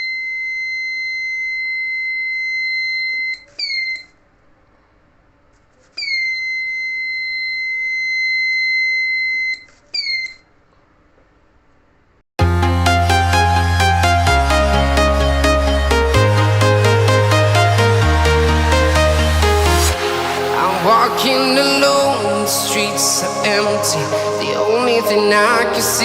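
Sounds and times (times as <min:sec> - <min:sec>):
electronic music: 0:12.4 - 0:26.0.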